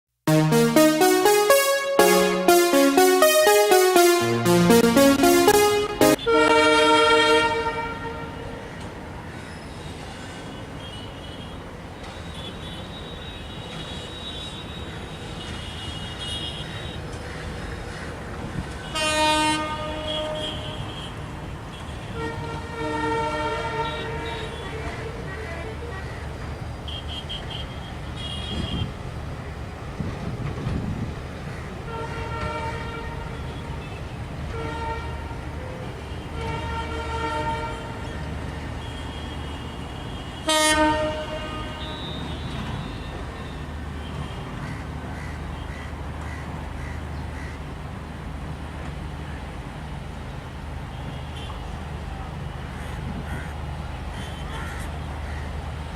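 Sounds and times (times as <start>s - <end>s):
locomotive horn blasts: 0.3s - 8.6s, 18.9s - 20.9s, 22.1s - 24.6s, 31.9s - 33.4s, 34.5s - 35.4s, 36.4s - 38.0s, 40.4s - 43.0s
train rumbling on track: 29.0s - 35.6s.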